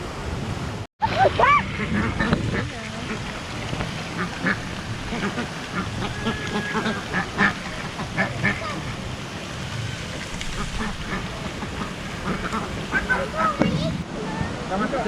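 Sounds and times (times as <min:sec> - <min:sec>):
ducks quacking: 0:01.4 - 0:14.0.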